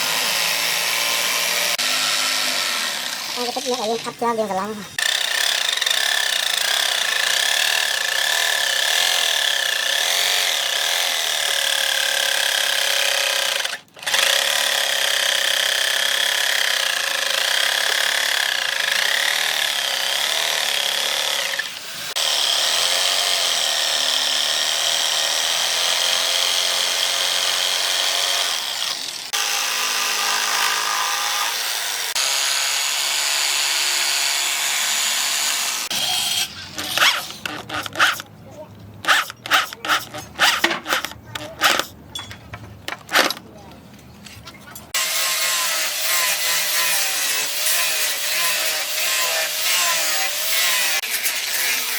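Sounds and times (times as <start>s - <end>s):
electric grinder grinding steel: 0.0s - 38.3s, 39.0s - 41.9s, 45.0s - 51.9s.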